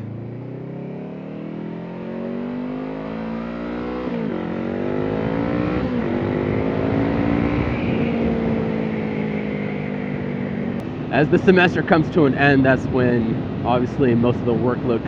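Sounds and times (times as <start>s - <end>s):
motorcycle engine accelerating: 0.0s - 11.5s
wind rush: 5.9s - 15.0s.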